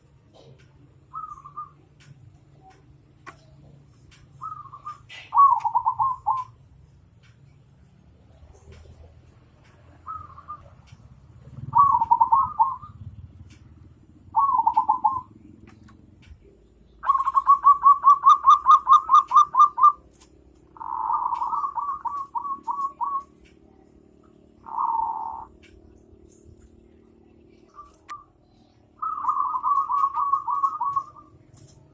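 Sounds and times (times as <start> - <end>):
bird calling: 0.3 - 6.6, 8.3 - 31.9.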